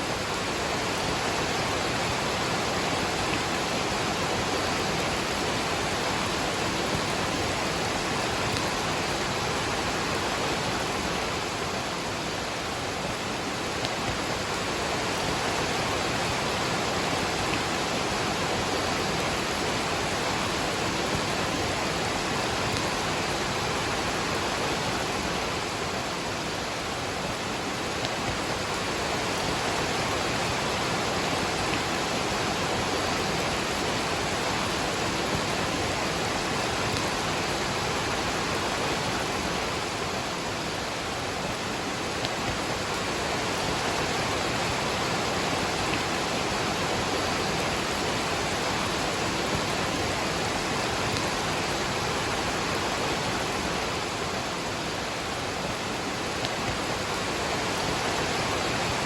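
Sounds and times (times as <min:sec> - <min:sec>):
rain falling: 0:00.0 - 0:59.0
waterfall roaring: 0:00.0 - 0:59.0.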